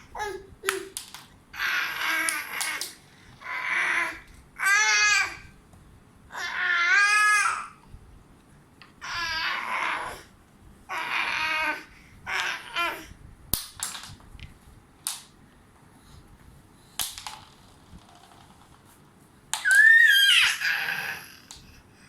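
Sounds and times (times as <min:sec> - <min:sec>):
baby babbling: 0:00.0 - 0:01.0, 0:01.6 - 0:05.5, 0:19.7 - 0:21.5
crayons clicking and tapping: 0:02.2 - 0:03.0.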